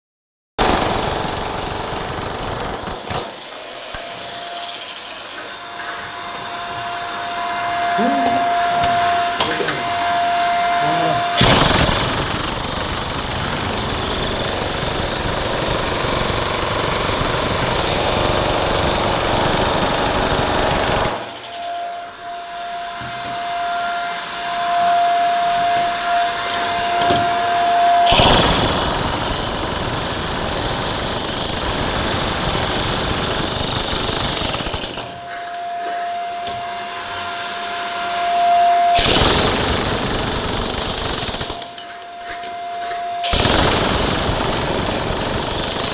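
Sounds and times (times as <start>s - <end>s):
power tool grinding and hammering: 0.8s - 21.7s, 24.4s - 37.3s, 39.0s - 45.9s
high motor whine: 5.4s - 12.8s.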